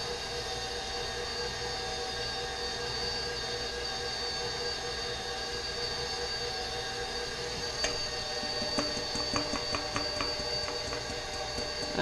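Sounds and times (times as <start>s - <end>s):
stand mixer motor hum: 4.4s - 12.0s.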